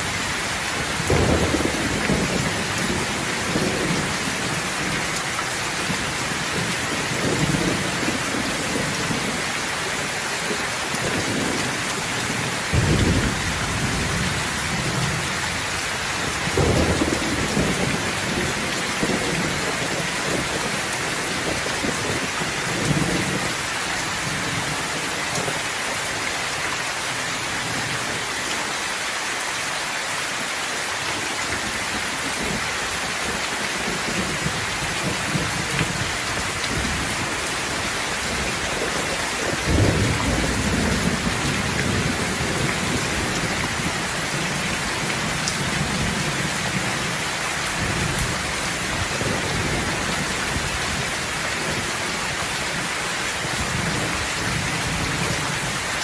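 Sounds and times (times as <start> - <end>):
steady rain falling: 0.0 - 56.0
thunder rumbling: 0.8 - 9.4, 11.1 - 23.6, 33.3 - 51.9.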